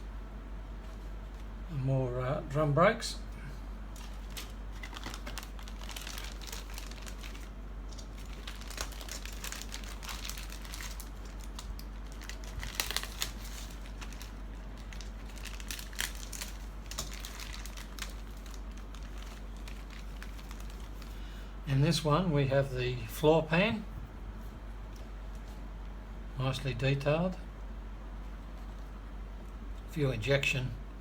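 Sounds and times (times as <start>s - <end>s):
steady low hum: 0.0s - 31.0s
plastic bags crinkling: 3.9s - 21.3s.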